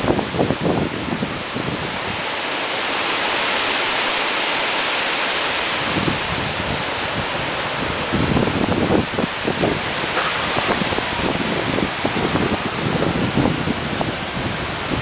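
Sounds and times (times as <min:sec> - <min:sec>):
wind buffeting microphone: 0:00.0 - 0:04.0, 0:05.5 - 0:15.0
strong wind rushing: 0:00.0 - 0:15.0.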